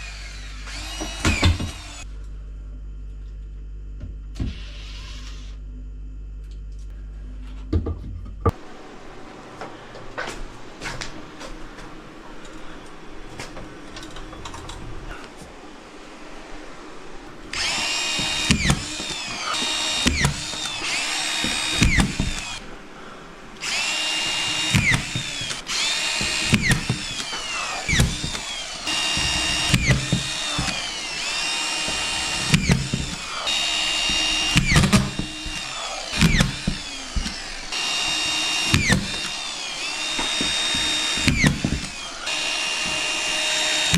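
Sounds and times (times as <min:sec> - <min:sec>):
power drill whining: 0:00.0 - 0:02.1, 0:04.4 - 0:05.6, 0:17.5 - 0:43.9
knocks and clunks: 0:07.6 - 0:08.6, 0:17.6 - 0:22.6, 0:23.6 - 0:43.9.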